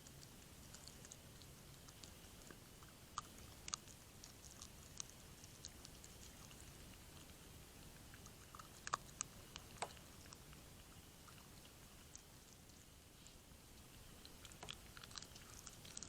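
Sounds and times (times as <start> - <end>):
low steady hiss: 0.0 - 16.0
faint clicks and crunches: 11.3 - 16.0.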